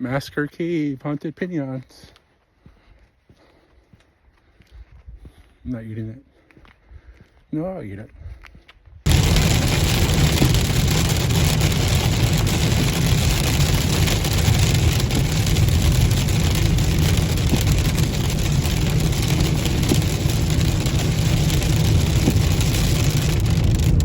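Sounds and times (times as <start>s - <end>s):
wind and road noise in car: 9.0s - 24.0s
car engine running: 9.1s - 24.0s.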